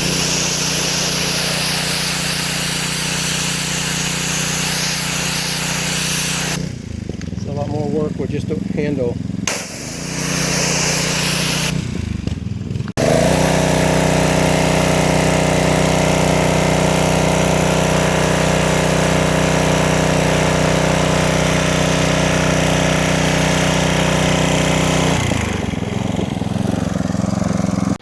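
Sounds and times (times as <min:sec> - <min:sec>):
water jet spraying concrete: 0:00.0 - 0:06.6, 0:09.5 - 0:12.0, 0:13.0 - 0:25.7
pressure washer engine running: 0:00.0 - 0:28.0.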